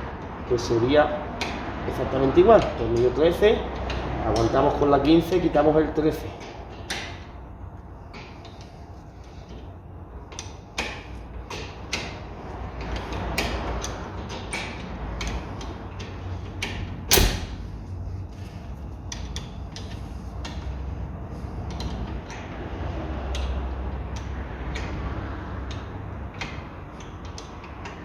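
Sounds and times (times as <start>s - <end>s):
loud metal clank: 17.1s - 17.8s
spanner metallic clicks: 17.1s - 17.8s.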